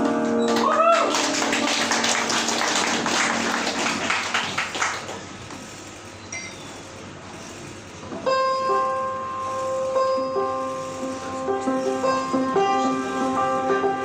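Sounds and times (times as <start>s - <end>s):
audience applauding: 0.0s - 5.5s
instrumental music with held notes: 8.3s - 14.0s.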